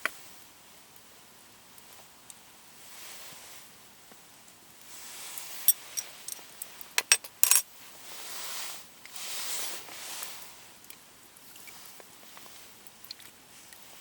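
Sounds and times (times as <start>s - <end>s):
light metallic clinks: 5.6s - 7.6s
hiss: 8.0s - 10.7s.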